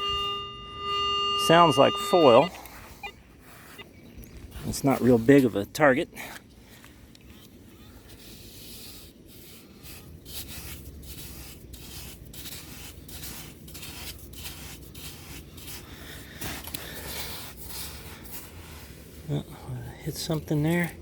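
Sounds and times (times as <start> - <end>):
shovel scraping wet sand: 8.2 - 19.2.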